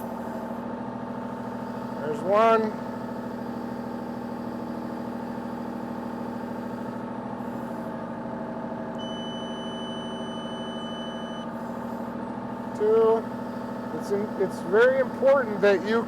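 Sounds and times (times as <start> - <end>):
excavator diesel engine running: 0.0 - 16.0
high electronic beep: 9.0 - 11.5.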